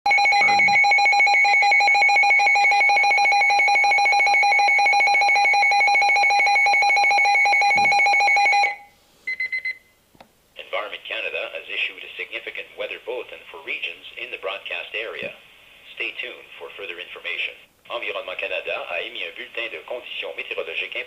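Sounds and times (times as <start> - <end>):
short high beeps: 0.1 - 1.1
steady electronic alarm tone: 0.1 - 9.8.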